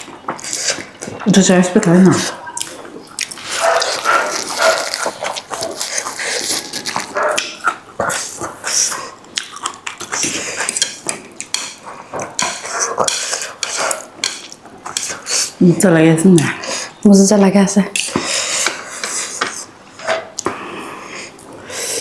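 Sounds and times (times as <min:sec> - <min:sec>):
noodle slurping and chewing: 0:00.3 - 0:01.1, 0:02.1 - 0:15.6
utensils clinking against bowl: 0:10.2 - 0:15.5.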